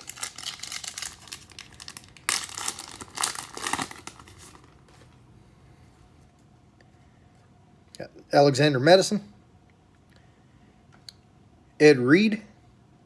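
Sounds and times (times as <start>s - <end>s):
foil wrapper crinkling and tearing: 0.0s - 5.0s.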